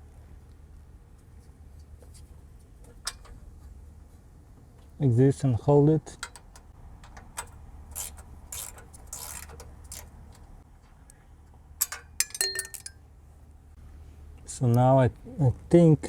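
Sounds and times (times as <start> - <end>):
ringing metal clinks: 11.8 - 13.0.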